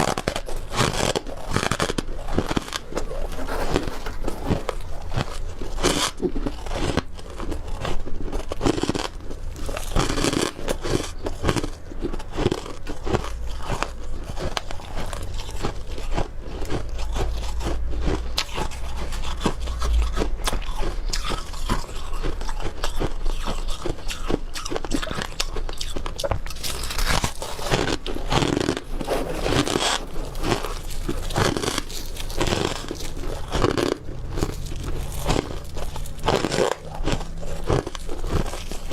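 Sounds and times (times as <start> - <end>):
crunching frozen frost chunks: 0.0 - 38.9.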